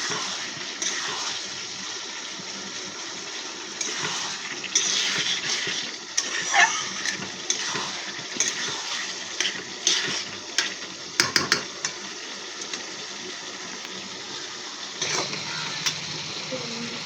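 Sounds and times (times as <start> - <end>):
potatoes sizzling in hot oil: 0.0 - 17.0
spatula scraping a pan: 3.8 - 11.5
spatula knocking on a pan: 11.2 - 11.7.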